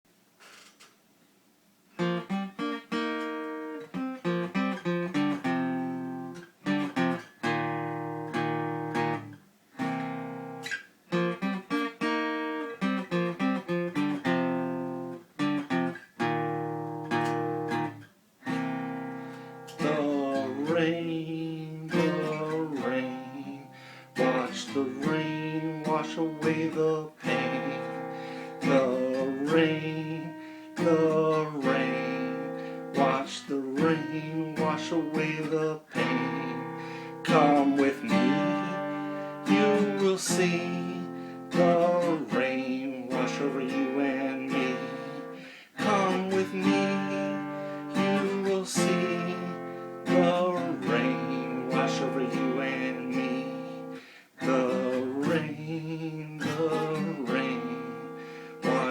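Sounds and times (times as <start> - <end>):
acoustic guitar blues-rock: 2.0 - 58.9.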